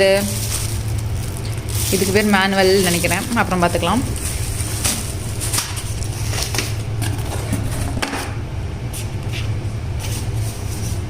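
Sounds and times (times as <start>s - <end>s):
steady low hum: 0.0s - 11.0s
packaging clicks and rustles: 0.2s - 7.9s.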